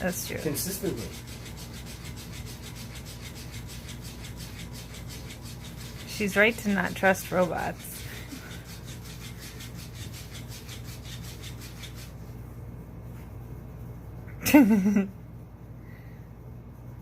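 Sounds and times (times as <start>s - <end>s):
robotic fish toy rasping: 0.0s - 12.2s.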